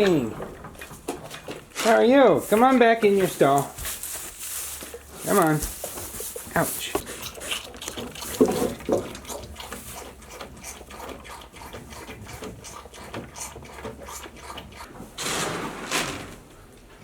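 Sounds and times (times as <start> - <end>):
animal gulping: 0.0 - 15.2
animal sucking milk from bottle: 5.8 - 15.2.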